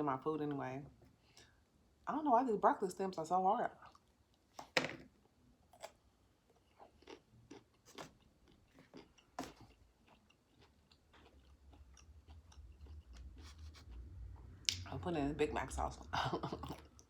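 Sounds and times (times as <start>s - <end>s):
chewing and crunching food: 3.7s - 4.7s, 5.7s - 14.8s, 16.3s - 17.0s.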